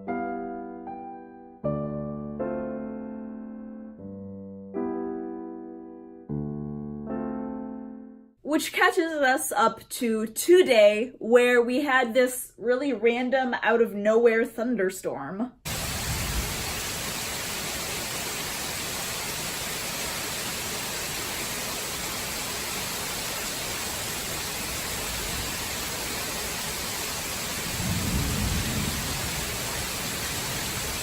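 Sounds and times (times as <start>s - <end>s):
thunder rumble: 15.7s - 17.2s, 27.2s - 31.0s
heavy rain pouring: 15.7s - 31.0s.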